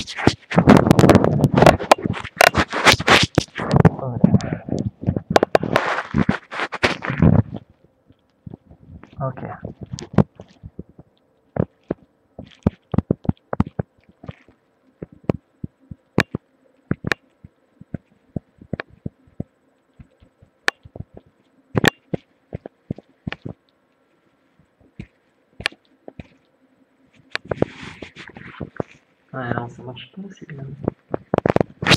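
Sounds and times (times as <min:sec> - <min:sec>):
faint steady hum: 0:00.0 - 0:31.9
sharp irregular clicks and knocks: 0:00.1 - 0:24.0.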